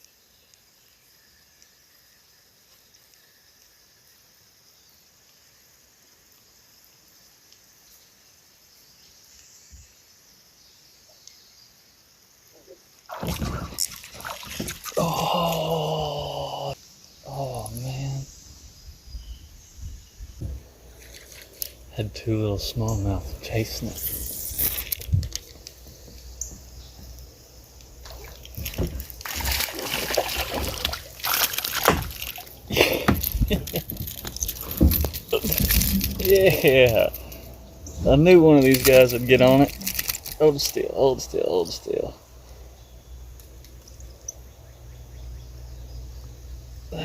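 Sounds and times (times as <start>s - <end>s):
faint river ambience: 0.0s - 47.0s
water splashing and sloshing: 13.1s - 15.6s, 27.8s - 37.2s
man exclaiming: 15.0s - 18.2s, 36.2s - 37.2s.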